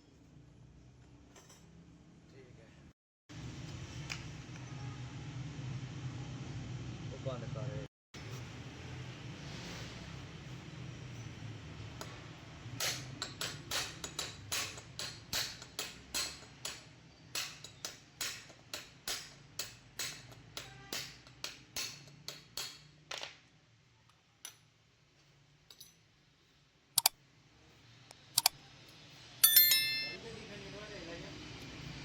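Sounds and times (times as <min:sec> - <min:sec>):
sharp metallic clinks: 0:29.4 - 0:30.2.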